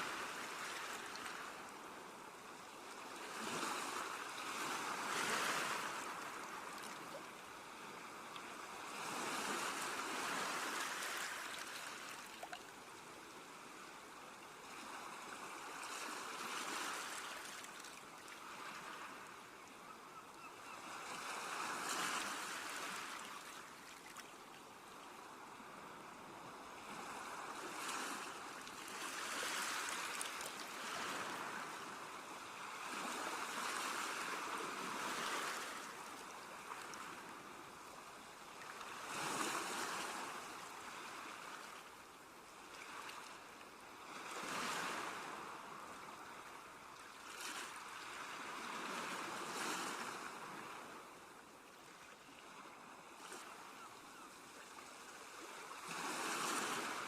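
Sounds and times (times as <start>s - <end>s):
sea waves breaking on shore: 0.0s - 57.0s.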